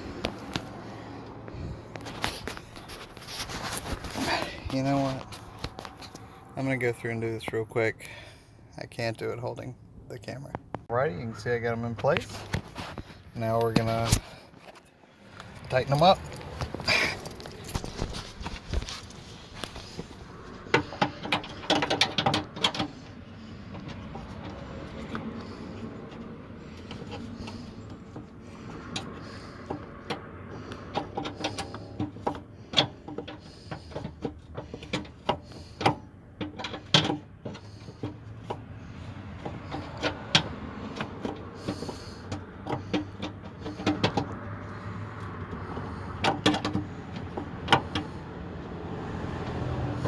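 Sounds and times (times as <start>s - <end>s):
metallic clicks and knocks: 19.6s - 25.3s, 26.8s - 48.2s.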